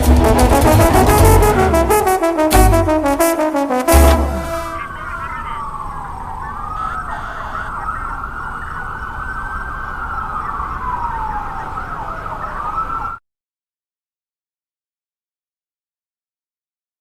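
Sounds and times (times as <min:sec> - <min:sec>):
low rumble: 0:00.0 - 0:03.3
siren wailing: 0:00.0 - 0:13.2.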